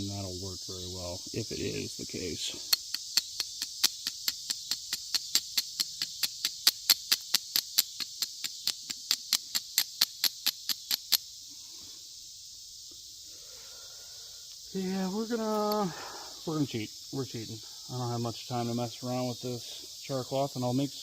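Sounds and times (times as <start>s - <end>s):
insects chirping: 0.0s - 21.0s
flint and steel striking: 2.7s - 11.3s.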